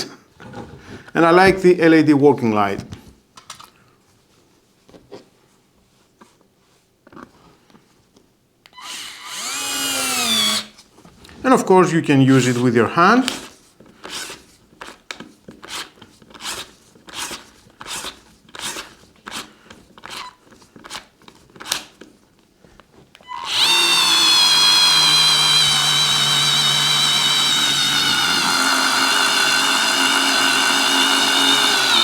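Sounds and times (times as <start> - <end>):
screwdriver motor whine: 8.8 - 10.7, 23.2 - 32.0.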